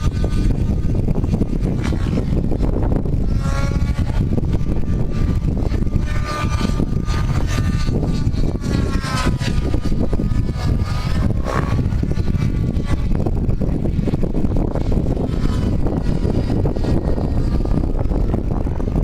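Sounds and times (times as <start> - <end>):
helicopter whine: 0.0 - 19.0
wind buffeting microphone: 0.0 - 19.0.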